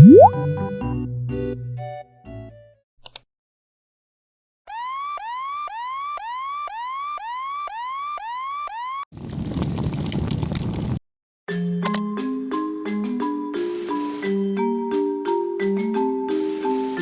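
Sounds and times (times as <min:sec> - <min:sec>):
siren whoops: 0:04.7 - 0:09.1.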